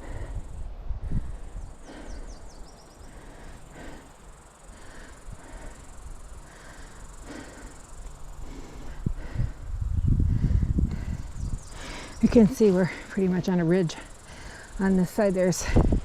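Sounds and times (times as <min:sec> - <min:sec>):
wind rumble on microphone: 0:00.0 - 0:03.2, 0:08.4 - 0:13.4, 0:15.0 - 0:16.0
bird song with trill: 0:01.6 - 0:03.3, 0:11.1 - 0:12.7.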